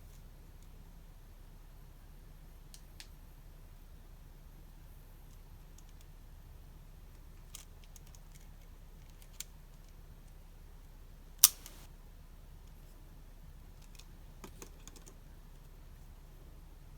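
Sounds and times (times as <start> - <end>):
stationery packaging clicks: 11.4 - 11.9.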